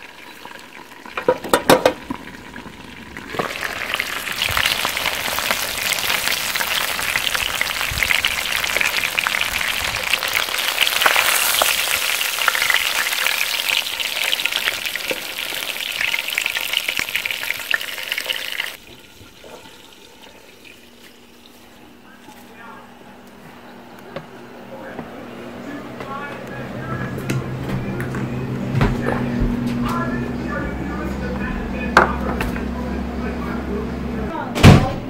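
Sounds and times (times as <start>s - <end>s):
fish frying in hot oil: 0.0s - 21.7s.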